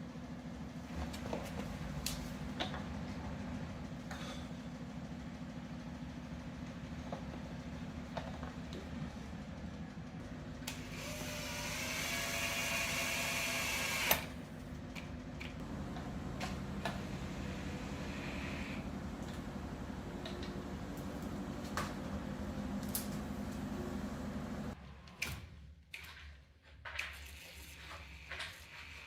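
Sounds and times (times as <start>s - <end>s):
small motor whirring: 10.8s - 14.3s.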